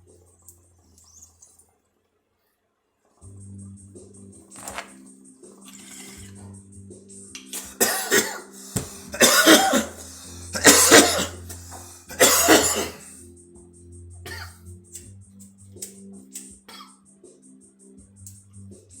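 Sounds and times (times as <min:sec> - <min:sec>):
background music: 0:03.2 - 0:19.0
man coughing hard: 0:07.6 - 0:13.1, 0:14.3 - 0:14.6.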